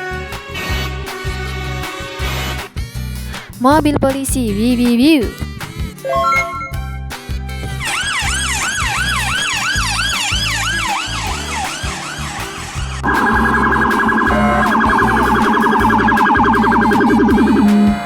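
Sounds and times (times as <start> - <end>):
background music with steady beat: 0.0 - 18.0
trilling electronic alarm tone: 6.0 - 6.9, 13.0 - 18.0
police siren wailing: 6.1 - 6.8, 7.8 - 18.0.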